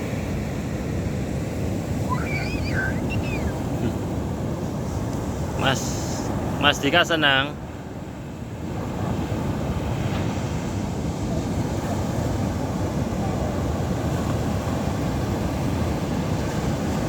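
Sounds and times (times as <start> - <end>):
wind buffeting microphone: 0.0 - 5.6
heavy surf: 0.0 - 17.0.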